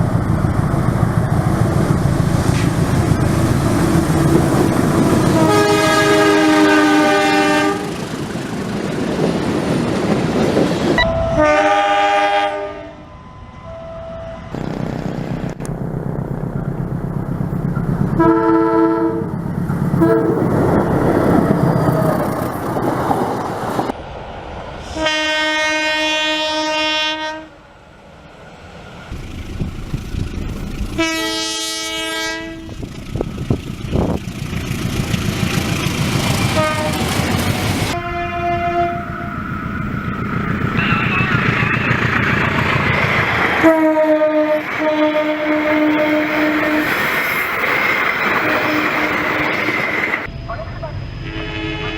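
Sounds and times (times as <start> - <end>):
locomotive air horn blasts: 5.3 - 8.0, 11.0 - 13.1, 18.2 - 19.3, 20.0 - 20.4, 24.9 - 27.6, 31.0 - 32.8, 36.5 - 37.1, 37.9 - 39.2, 43.6 - 47.0, 51.2 - 51.9
train wheels clattering on rails: 16.4 - 18.2, 32.7 - 38.0, 39.7 - 43.8, 45.5 - 50.3.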